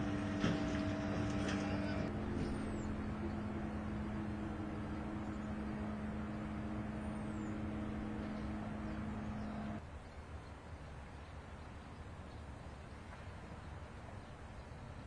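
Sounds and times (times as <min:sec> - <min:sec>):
engine droning: 0:00.0 - 0:09.8.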